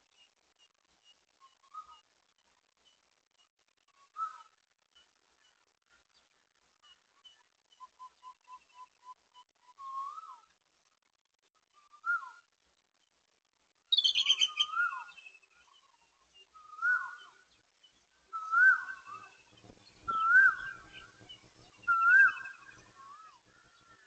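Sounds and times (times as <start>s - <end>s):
bird whistled call: 13.9s - 15.3s, 16.6s - 17.4s, 18.3s - 19.4s, 20.1s - 21.2s, 21.8s - 24.0s
faint bird trill: 13.9s - 16.0s, 18.3s - 24.0s.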